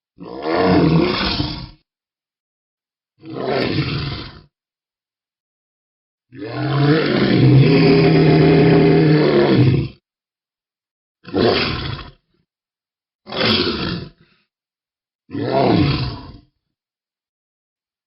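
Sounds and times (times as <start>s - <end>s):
monster roaring: 0.2s - 1.8s, 3.2s - 4.5s, 6.3s - 10.0s, 11.2s - 12.2s, 13.3s - 14.2s, 15.3s - 16.4s.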